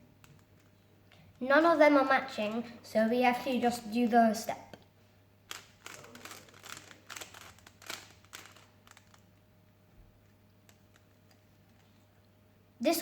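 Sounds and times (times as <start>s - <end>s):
plastic puzzle cube clicking: 5.5s - 9.2s.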